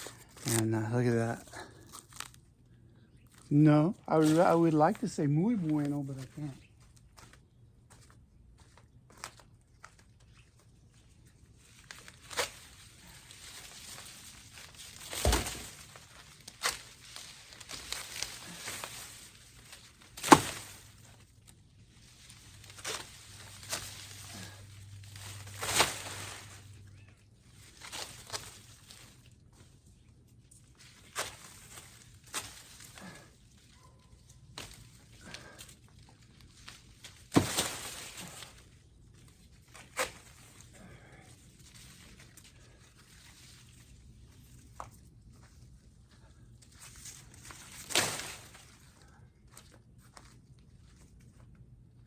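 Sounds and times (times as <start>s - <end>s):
corn leaves rustling: 0.0s - 2.4s, 3.3s - 7.4s, 8.0s - 51.2s
corn stalk snapping: 13.5s - 21.1s.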